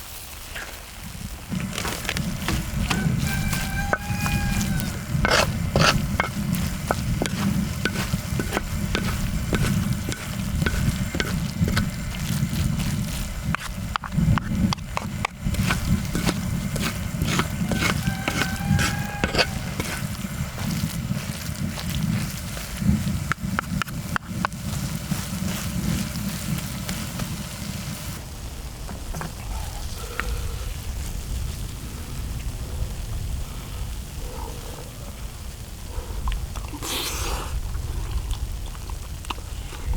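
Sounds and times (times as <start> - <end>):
rice sizzling on hot metal: 0.0 - 34.1
low rumble: 1.4 - 23.5
spatula scraping metal: 1.5 - 21.6.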